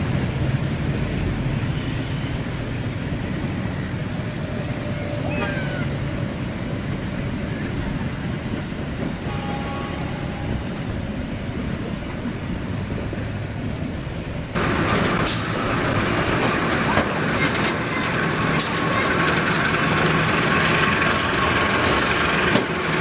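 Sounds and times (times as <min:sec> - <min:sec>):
train rumbling on rails: 0:00.0 - 0:23.0
sharp clicks and rattles: 0:14.6 - 0:21.2.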